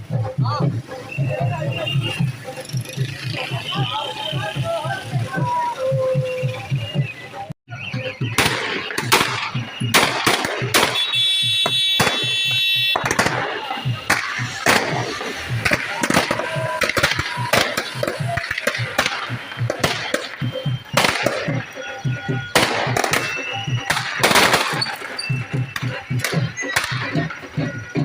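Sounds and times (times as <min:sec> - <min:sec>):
fireworks cracking and banging: 0:08.0 - 0:28.0
high steady whistle: 0:19.2 - 0:28.0.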